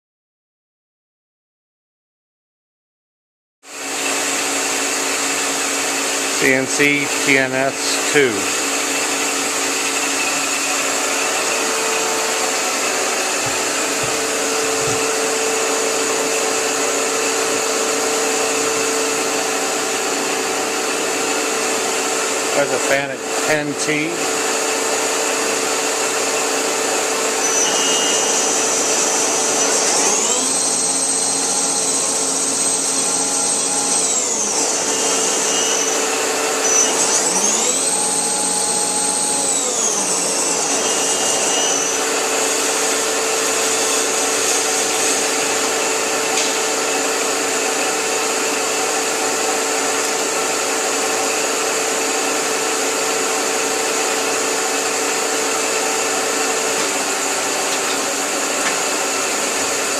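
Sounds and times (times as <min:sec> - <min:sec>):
lathe spindle drive whining: 0:03.7 - 0:59.9
machine hum: 0:05.3 - 0:17.4.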